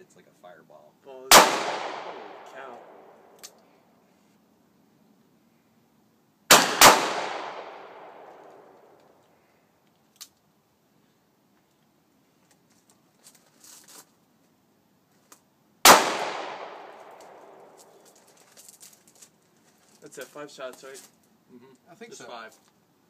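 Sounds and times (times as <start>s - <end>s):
handgun shots with echo: 1.3s - 2.9s, 6.5s - 8.7s, 15.9s - 17.6s
faint small clicks: 9.0s - 10.5s.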